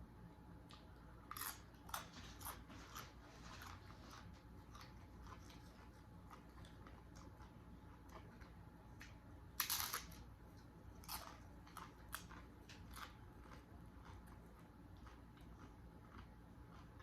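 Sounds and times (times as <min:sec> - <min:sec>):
chewing crunches: 0:00.6 - 0:17.0
tortilla chip crunch: 0:09.6 - 0:10.3.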